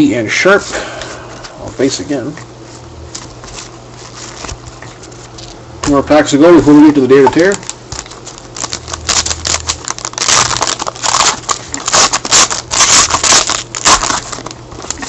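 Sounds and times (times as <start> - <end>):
foil wrapper crinkling and tearing: 3.0 - 6.0, 6.6 - 15.0.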